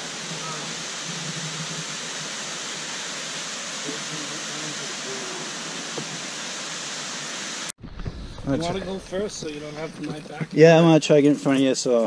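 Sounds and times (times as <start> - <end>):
stream flowing over rocks: 0.0 - 7.7.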